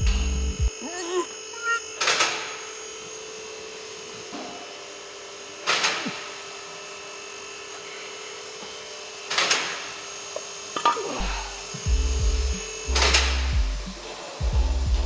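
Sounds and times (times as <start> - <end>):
steady hum: 0.0 - 1.9, 10.8 - 15.0
tools clattering: 9.3 - 11.4.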